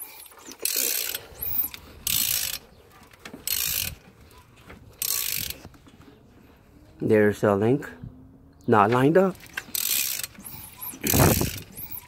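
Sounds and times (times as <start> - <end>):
ratchet wrench clicking: 0.0 - 2.6, 3.4 - 4.0, 5.0 - 5.6, 9.4 - 12.0.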